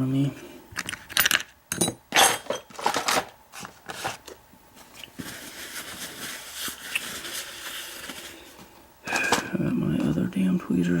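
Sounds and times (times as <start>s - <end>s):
small tools clicking and clattering: 0.8s - 3.7s, 9.1s - 9.5s.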